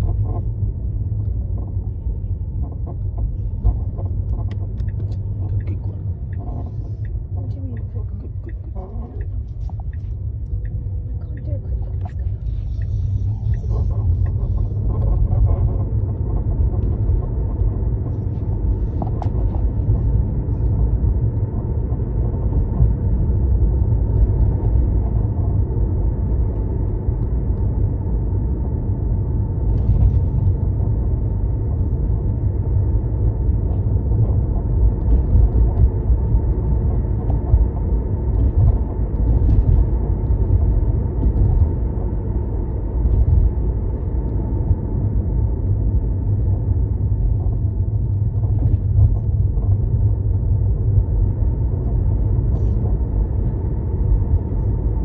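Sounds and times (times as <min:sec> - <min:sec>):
car interior rumble: 0:00.0 - 0:55.0
faint steady hum: 0:00.0 - 0:55.0.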